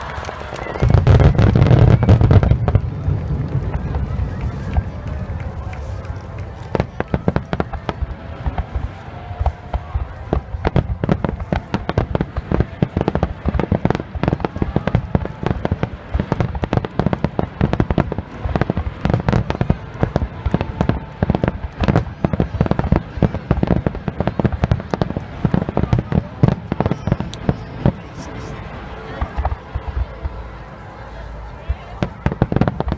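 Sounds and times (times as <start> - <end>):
fireworks bursting: 0.0 - 30.6, 31.8 - 32.9.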